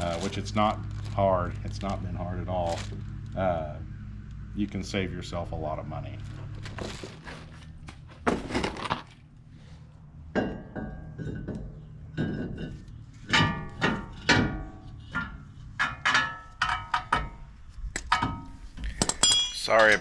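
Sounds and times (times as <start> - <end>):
metal tools clinking on metal: 18.6 - 20.0.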